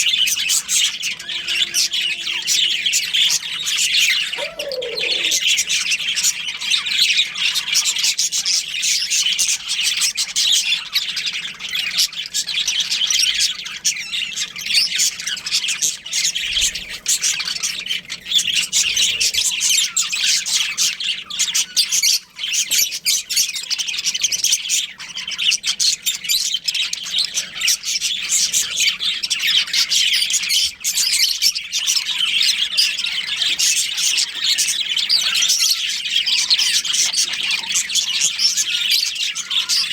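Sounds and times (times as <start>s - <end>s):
budgerigars chirping: 0.0s - 15.5s.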